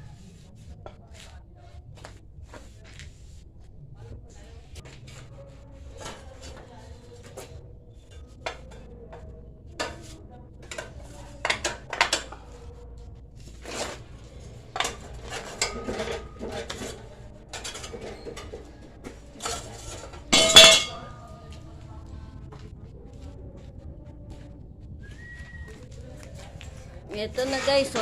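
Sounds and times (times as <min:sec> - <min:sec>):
steel bars clanking together: 0:19.4 - 0:21.2.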